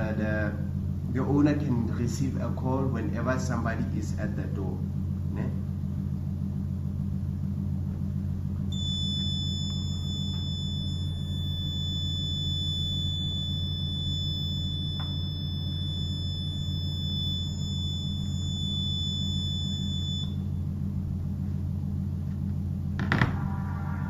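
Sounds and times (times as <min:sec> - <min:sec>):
low hum: 0:00.0 - 0:24.0
buzzer high-pitched tone: 0:08.7 - 0:20.6.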